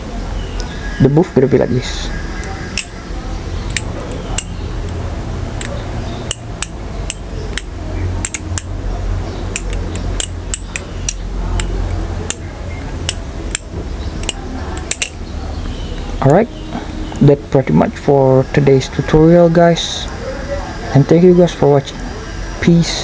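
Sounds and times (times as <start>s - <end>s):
steady low hum: 0.0s - 23.0s
butterfly knife handles clicking: 2.4s - 15.3s.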